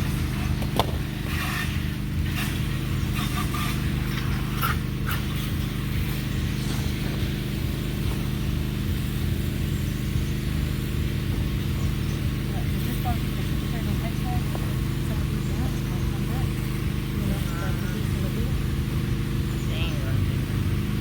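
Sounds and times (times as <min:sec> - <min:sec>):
rustling and scraping of vines: 0:00.0 - 0:08.4
low machine hum: 0:00.0 - 0:21.0.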